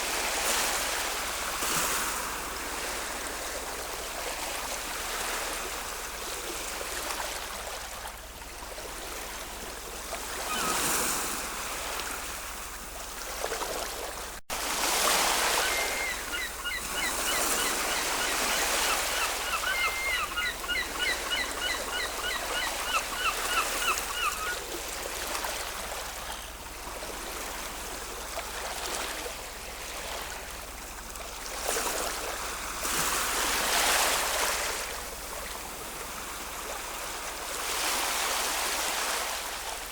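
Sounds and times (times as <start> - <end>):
ocean waves washing on shore: 0.0 - 39.9
bird calling in short notes: 15.3 - 24.6.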